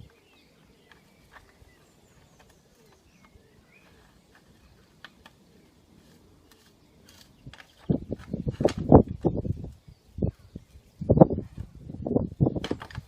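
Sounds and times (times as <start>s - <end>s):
faint bird chirps: 0.0s - 8.4s.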